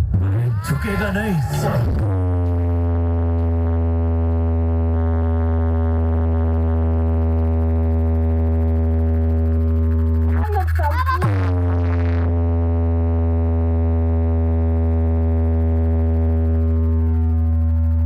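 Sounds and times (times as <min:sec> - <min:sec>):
deep synthesizer bass drone: 0:00.0 - 0:18.0.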